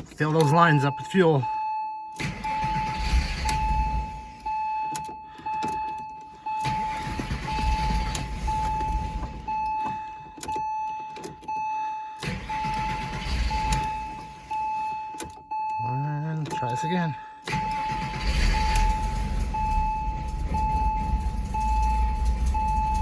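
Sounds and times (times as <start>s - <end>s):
engine cranking on starter: 2.2s - 4.5s, 6.5s - 9.6s, 12.2s - 14.7s, 17.4s - 23.0s
beeping tone: 18.6s - 23.0s.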